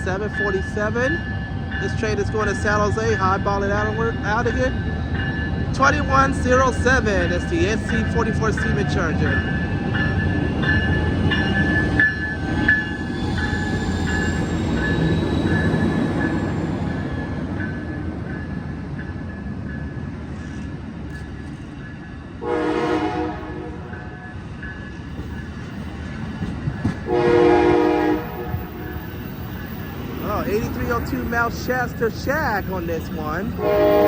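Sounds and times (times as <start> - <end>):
train cars rumbling past: 0.0 - 34.0
locomotive horn blasts: 22.4 - 23.9, 27.1 - 28.9, 33.5 - 34.0.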